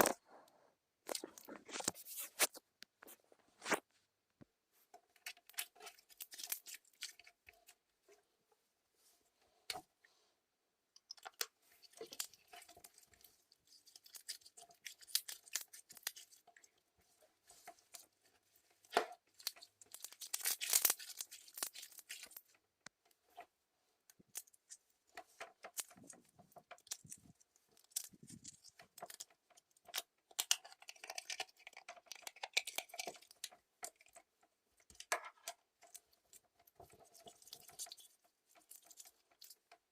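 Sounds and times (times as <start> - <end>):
slime squishing and crackling: 5.1 - 7.5, 11.1 - 16.8, 18.7 - 22.6, 24.2 - 39.9.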